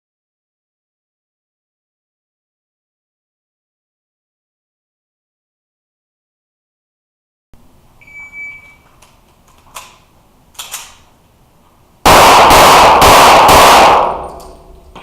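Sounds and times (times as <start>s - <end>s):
short high beep: 8.0s - 8.8s
rapid pistol shots: 12.0s - 14.5s.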